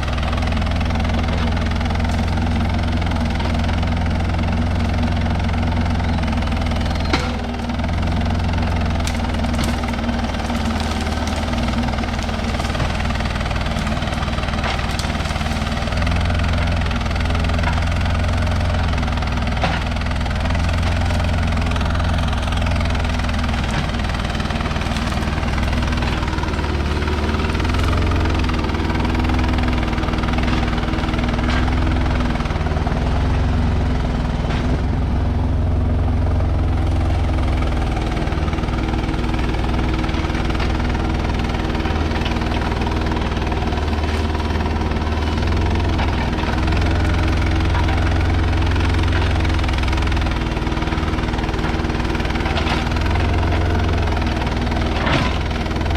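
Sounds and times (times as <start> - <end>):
diesel engine running under load: 0.0 - 55.9.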